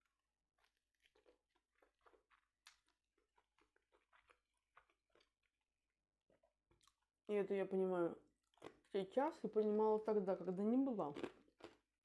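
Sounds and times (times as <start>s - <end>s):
person chewing: 0.0s - 5.6s, 8.4s - 8.9s, 11.2s - 11.9s.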